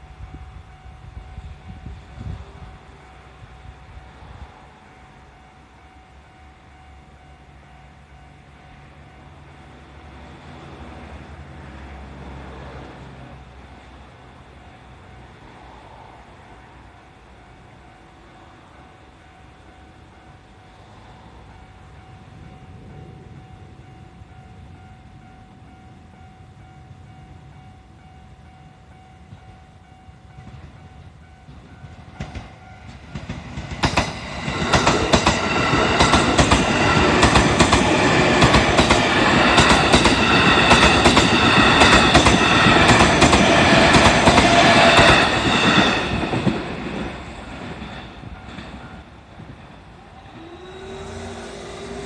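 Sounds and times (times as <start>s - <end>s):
electric train passing: 0.0s - 52.0s
level crossing warning bell: 0.0s - 52.0s
train wheels clacking on rail joints: 30.3s - 52.0s.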